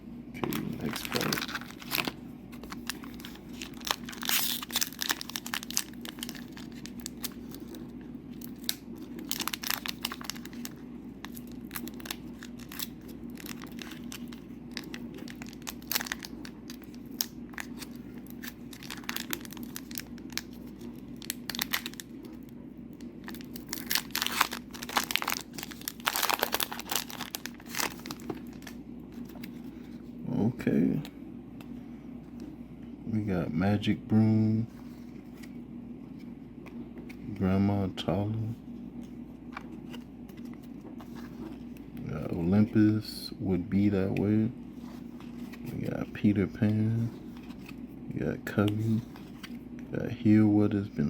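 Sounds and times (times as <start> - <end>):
steady low hum: 0.0 - 51.0
cards rustling: 0.5 - 22.4, 23.2 - 30.0, 44.1 - 47.9
foil wrapper tearing and crinkling: 0.7 - 7.8, 8.4 - 22.1, 23.2 - 28.8.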